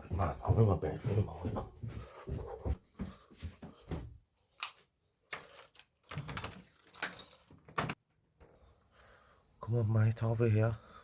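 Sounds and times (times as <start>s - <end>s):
footsteps in a house: 0.0s - 5.6s.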